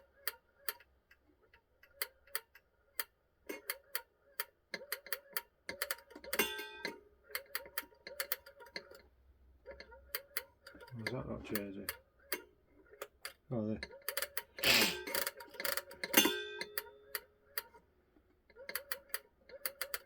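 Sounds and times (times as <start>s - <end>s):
clock ticking: 9.7s - 17.8s, 18.5s - 20.0s.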